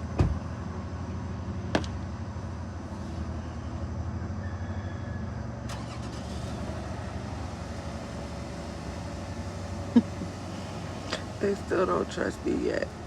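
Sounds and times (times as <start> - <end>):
motor pulsing rumble: 6.4 - 13.0.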